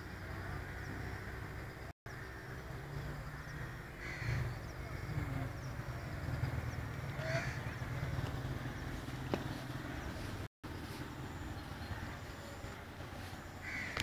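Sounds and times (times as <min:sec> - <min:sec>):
bird calling: 0:03.2 - 0:14.0.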